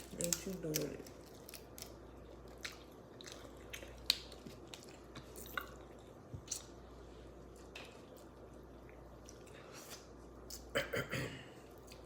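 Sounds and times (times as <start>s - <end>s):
wet chewing and smacking: 0.2s - 6.8s.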